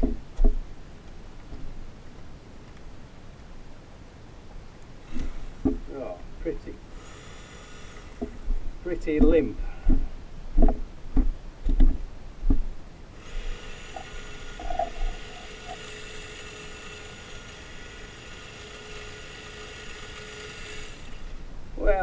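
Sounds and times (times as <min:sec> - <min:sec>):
hedge trimmer whine: 0:05.0 - 0:09.6, 0:13.2 - 0:22.0.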